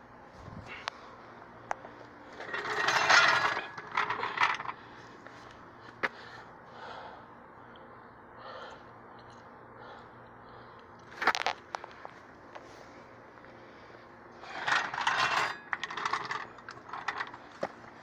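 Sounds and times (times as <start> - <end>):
car jack scraping: 2.4 - 4.8, 14.4 - 17.7
metal rattles and clanks: 2.4 - 4.8, 14.4 - 17.6.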